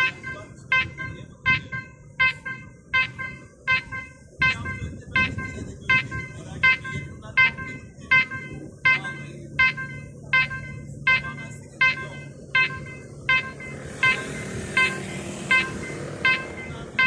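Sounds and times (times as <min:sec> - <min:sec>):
level crossing warning bell: 0:00.0 - 0:17.0
train approaching: 0:07.4 - 0:17.0.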